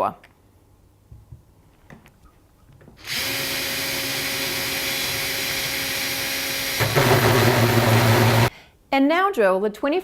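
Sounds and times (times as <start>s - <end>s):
power drill boring through wood: 3.0s - 8.5s.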